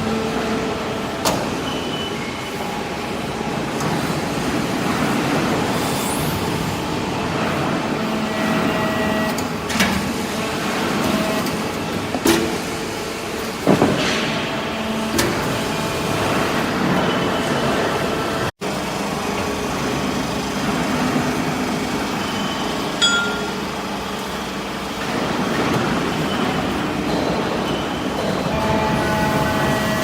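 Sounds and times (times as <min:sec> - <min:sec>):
hydraulic baler droning: 0:18.6 - 0:30.0
sharp metallic knocks: 0:23.0 - 0:23.7.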